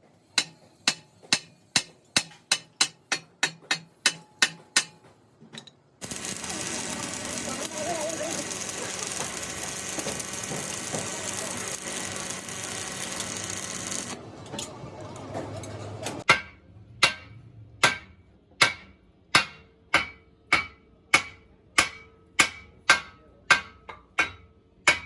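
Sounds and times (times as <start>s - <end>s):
hammer striking metal: 0.4s - 7.8s, 16.2s - 25.0s
steady hiss: 6.0s - 14.2s.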